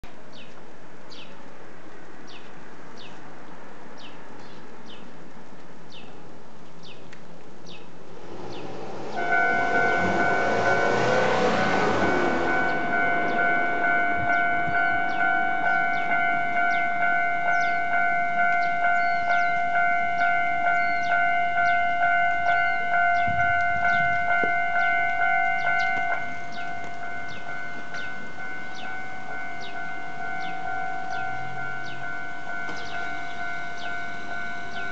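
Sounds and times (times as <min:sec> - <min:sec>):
level crossing warning bell: 0:08.3 - 0:34.9.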